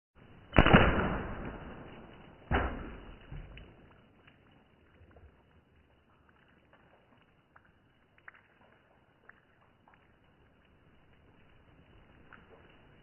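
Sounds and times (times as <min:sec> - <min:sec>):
bb gun shots: 0:00.6 - 0:03.2
light ticks: 0:03.6 - 0:13.0.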